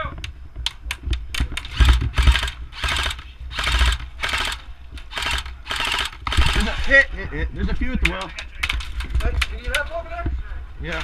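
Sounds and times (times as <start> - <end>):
airsoft gun firing: 1.4 - 6.8.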